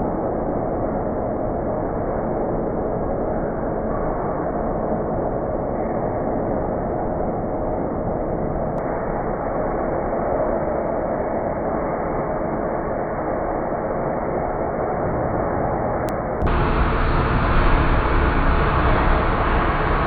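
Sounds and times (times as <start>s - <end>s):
muffled rain rumble: 13.0s - 20.0s.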